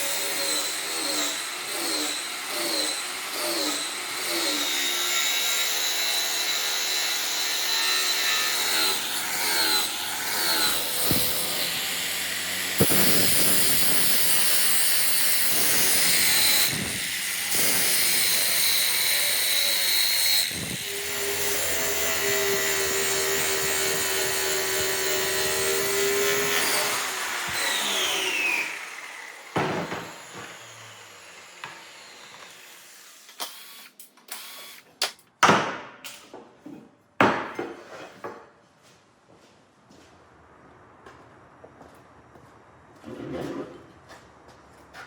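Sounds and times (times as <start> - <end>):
power grinder grinding steel: 0.0 - 35.0.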